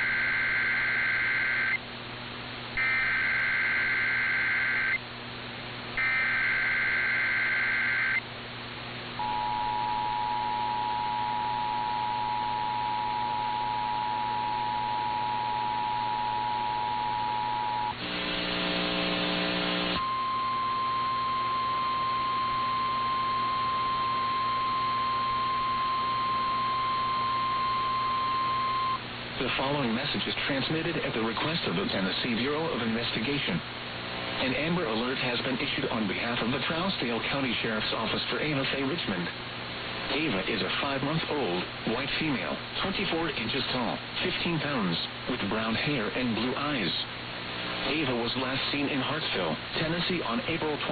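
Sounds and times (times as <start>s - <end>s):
harsh buzz: 0.0s - 1.8s, 2.8s - 5.0s, 6.0s - 8.3s, 11.4s - 27.1s
raspy digital data bursts: 0.0s - 1.8s, 2.8s - 5.0s, 6.0s - 8.2s
steady high tone: 0.0s - 1.8s, 2.8s - 5.0s, 6.0s - 8.2s, 9.2s - 18.0s, 20.0s - 29.0s
low mains hum: 0.0s - 50.9s
two-tone attention signal: 9.2s - 18.0s, 20.0s - 29.0s.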